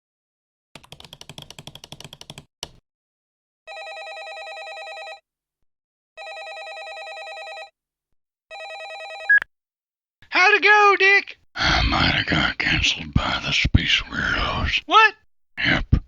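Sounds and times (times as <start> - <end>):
cartoon telephone ringing: 3.7 - 5.2, 6.2 - 7.8, 8.5 - 9.4.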